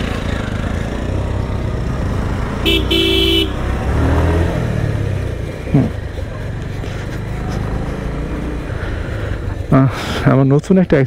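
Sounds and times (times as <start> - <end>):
motorcycle engine running: 0.0 - 10.4
horn beep: 2.6 - 3.7.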